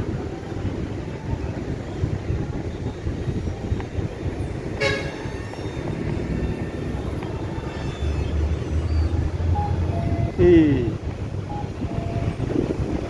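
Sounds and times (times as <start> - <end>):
short horn toot: 4.8 - 5.4.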